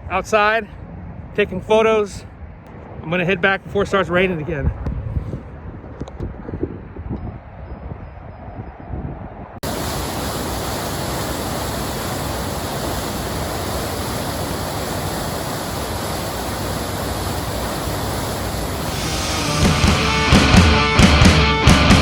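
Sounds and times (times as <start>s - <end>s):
rushing water: 9.6s - 20.5s
rock music: 18.8s - 22.0s.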